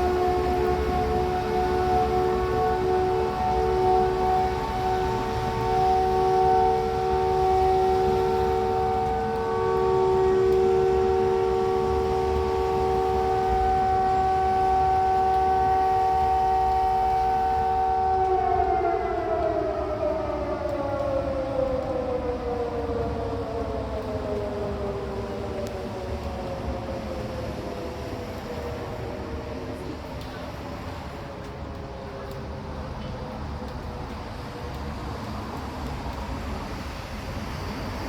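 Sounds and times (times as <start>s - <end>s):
siren sounding: 0.0s - 27.4s.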